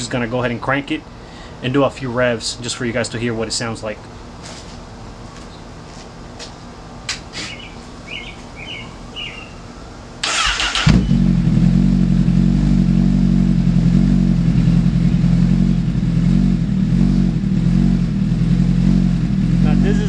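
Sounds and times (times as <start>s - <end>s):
bird chirps: 7.4s - 9.8s
motorcycle starter cranking: 10.2s - 11.2s
motorcycle engine idling: 10.8s - 20.0s.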